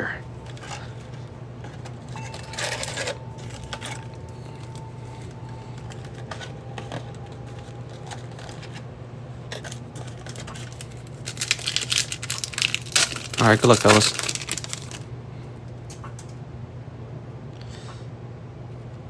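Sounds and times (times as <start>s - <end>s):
steady low hum: 0.0s - 19.0s
foil pack crinkling: 0.3s - 8.8s, 9.4s - 15.1s.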